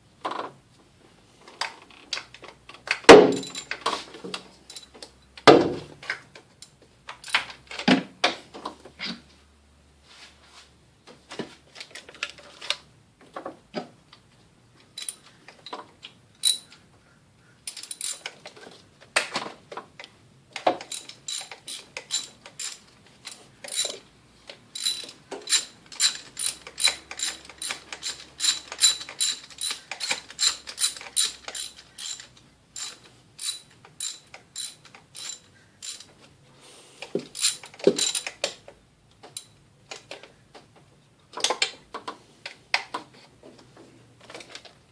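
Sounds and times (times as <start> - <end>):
ratchet wrench clicking: 16.4 - 16.7, 17.7 - 18.3, 20.8 - 24.0, 24.7 - 36.1, 37.3 - 38.4.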